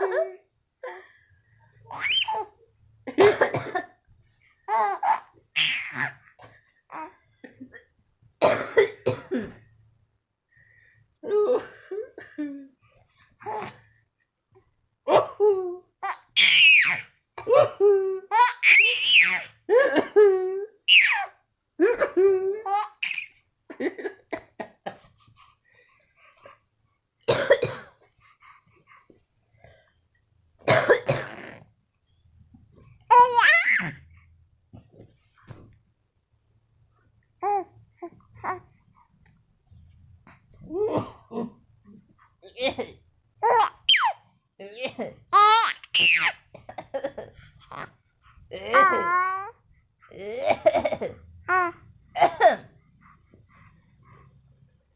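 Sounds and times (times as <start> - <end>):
baby laughing: 1.9 - 2.6, 16.0 - 19.5, 20.2 - 23.4, 33.1 - 34.0, 43.4 - 44.2, 44.8 - 48.0.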